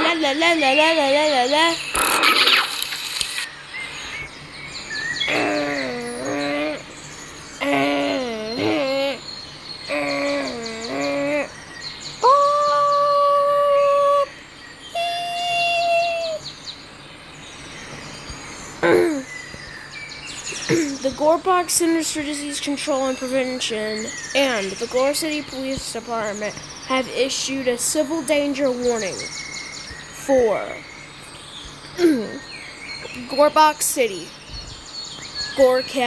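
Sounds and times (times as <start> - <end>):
warbling alert tones: 0.0 - 4.3.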